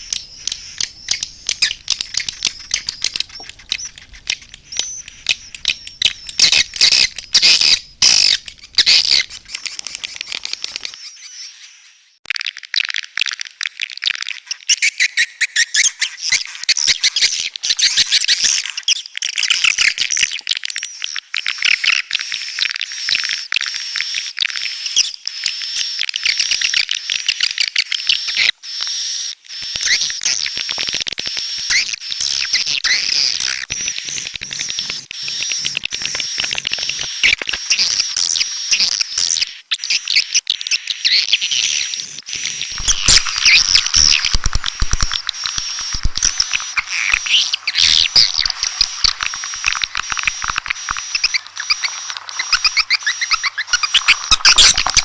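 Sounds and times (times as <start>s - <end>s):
high steady whistling tone: 0.0s - 10.3s, 42.4s - 55.0s
swiftlets twittering: 0.0s - 10.9s, 42.2s - 55.0s.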